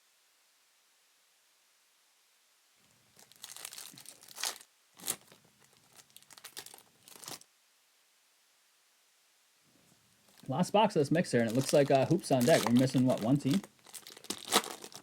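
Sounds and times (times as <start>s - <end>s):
plastic wrapping crinkling and tearing: 3.1s - 7.5s, 11.2s - 15.0s.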